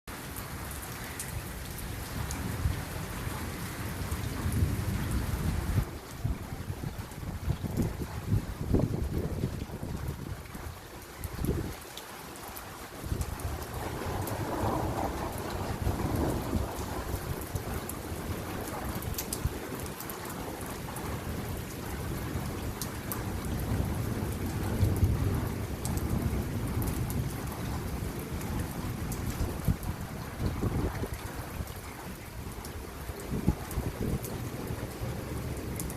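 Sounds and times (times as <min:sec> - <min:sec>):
rain on a rooftop: 0:00.0 - 0:35.9
rolling thunder: 0:13.0 - 0:19.8, 0:21.3 - 0:31.8.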